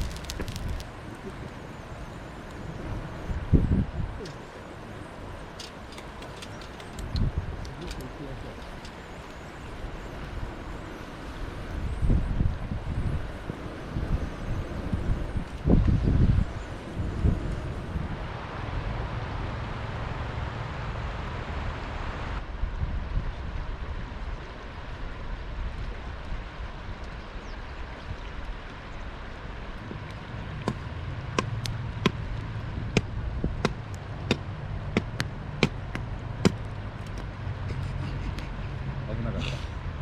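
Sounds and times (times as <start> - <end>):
low steady rumble: 14.0 - 40.0.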